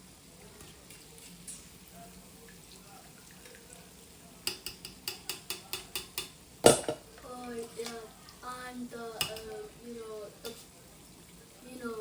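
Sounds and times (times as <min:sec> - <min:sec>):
faint steady hiss: 0:00.0 - 0:12.0
metal utensil clinking on pot: 0:04.4 - 0:07.0, 0:09.2 - 0:09.6.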